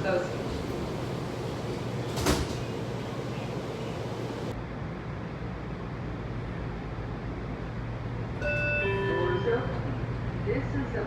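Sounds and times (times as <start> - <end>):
railcar low hum: 0.0 - 11.0
train doors shutting thud: 0.4 - 4.5.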